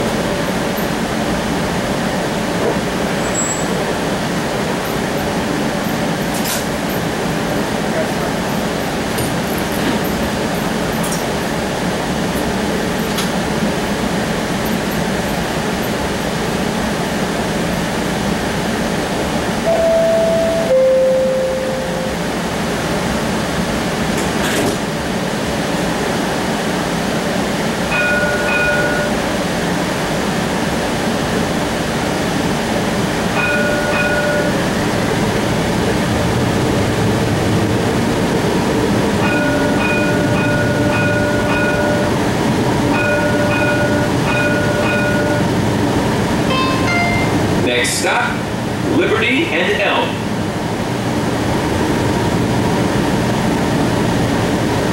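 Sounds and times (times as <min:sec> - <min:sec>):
streetcar running rumble: 0:00.0 - 0:54.9
falling two-note chime: 0:46.5 - 0:47.5
short electronic tone: 0:46.5 - 0:47.5.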